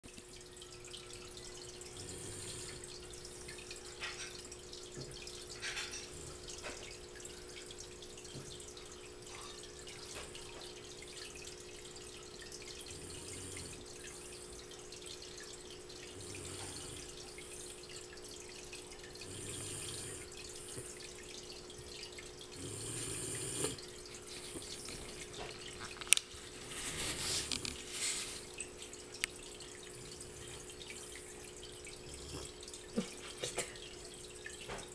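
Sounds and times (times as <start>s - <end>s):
pet snoring softly: 1.9s - 2.9s, 12.8s - 14.6s, 16.1s - 17.7s, 19.2s - 21.0s, 22.5s - 23.9s, 32.0s - 32.6s.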